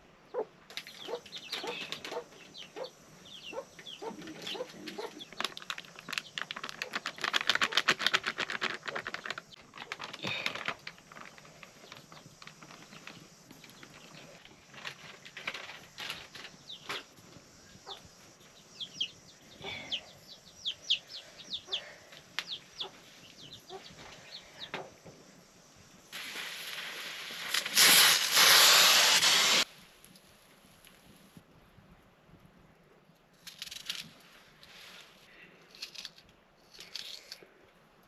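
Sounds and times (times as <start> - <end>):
chickens chirping: 1.0 - 5.4
loud steady hiss: 24.3 - 31.3.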